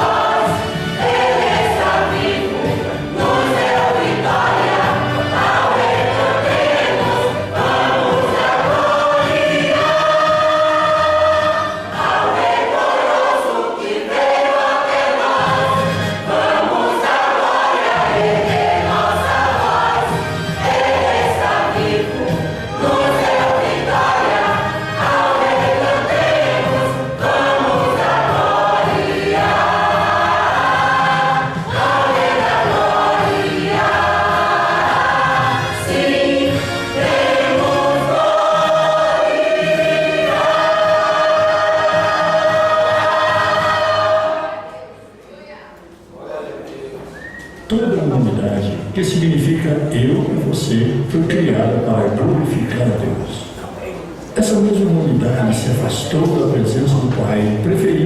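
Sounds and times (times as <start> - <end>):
instrumental accompaniment: 0.0 - 45.1
choir singing a hymn: 0.0 - 45.2.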